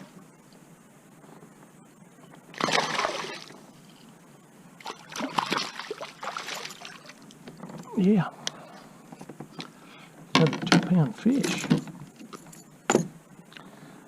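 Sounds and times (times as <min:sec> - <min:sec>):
fish splashing in water: 0:02.6 - 0:03.6, 0:04.8 - 0:07.1.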